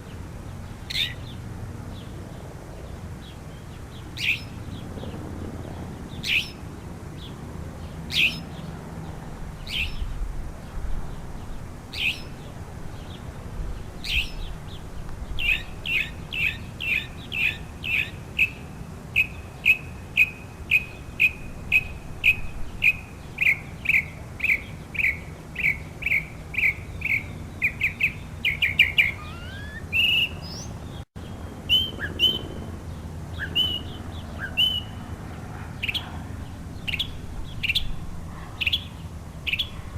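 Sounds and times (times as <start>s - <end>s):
mockingbird singing: 0.9s - 1.3s, 4.2s - 4.6s, 6.2s - 6.6s, 8.1s - 8.6s, 9.6s - 10.1s, 14.0s - 14.5s, 15.4s - 18.6s, 19.2s - 31.0s, 31.7s - 32.6s, 33.4s - 35.0s.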